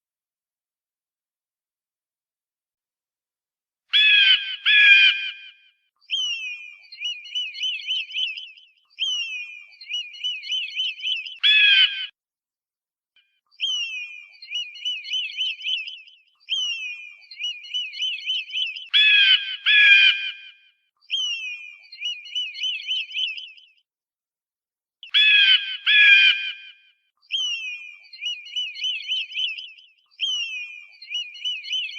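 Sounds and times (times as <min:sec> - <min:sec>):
harsh bird screams: 0:04.0 - 0:05.5, 0:09.0 - 0:12.1, 0:13.6 - 0:20.6, 0:25.1 - 0:29.6
rapid high chattering bird calls: 0:06.1 - 0:12.1, 0:13.6 - 0:20.3, 0:21.1 - 0:23.8, 0:25.1 - 0:26.4, 0:27.3 - 0:31.9.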